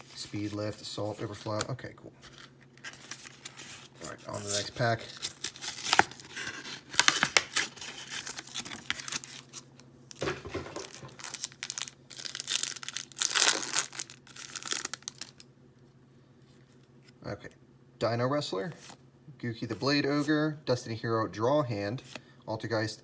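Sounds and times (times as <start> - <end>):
card pack packaging tearing: 2.3 - 15.4.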